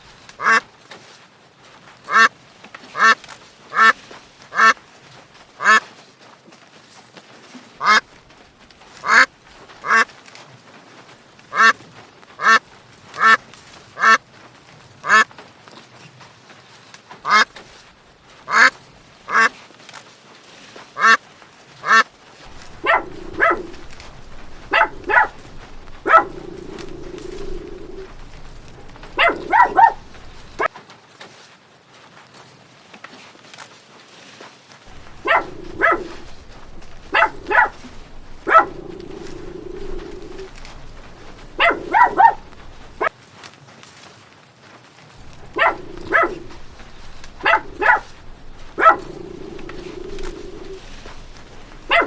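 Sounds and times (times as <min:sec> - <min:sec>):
duck quacking: 0:00.4 - 0:00.6, 0:21.8 - 0:30.7, 0:34.9 - 0:43.1, 0:45.2 - 0:52.0
drawn-out low call: 0:22.5 - 0:30.7, 0:34.9 - 0:43.1, 0:45.2 - 0:52.0.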